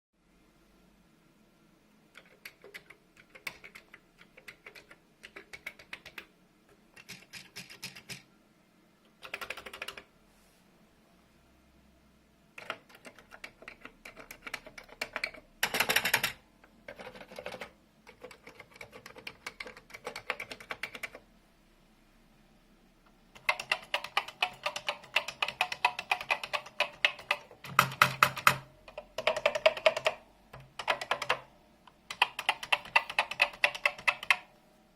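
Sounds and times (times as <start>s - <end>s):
mechanical keyboard typing: 2.1s - 8.3s, 9.1s - 10.1s, 12.5s - 21.2s, 23.3s - 34.5s.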